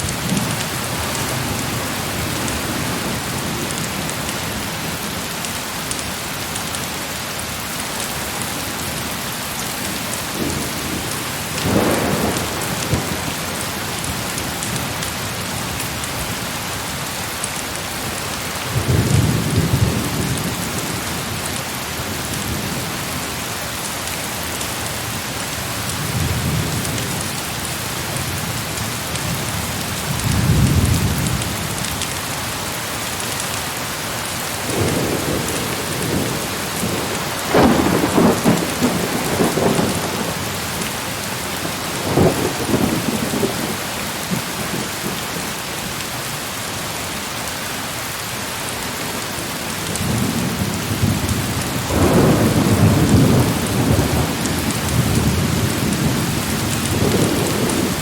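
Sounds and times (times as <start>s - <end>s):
heavy rain pouring: 0.0s - 58.0s
thunder rumbling: 10.3s - 15.0s, 34.6s - 45.2s, 49.8s - 58.0s.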